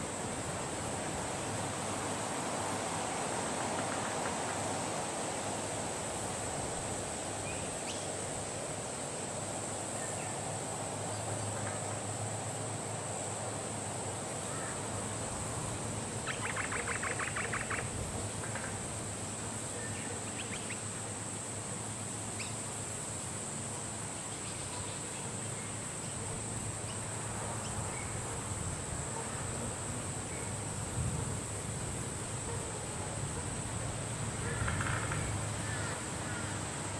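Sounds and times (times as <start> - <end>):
wind with high-pitched hiss: 0.0 - 36.9
birds calling: 16.2 - 18.7
bird rattling trill: 16.3 - 17.8.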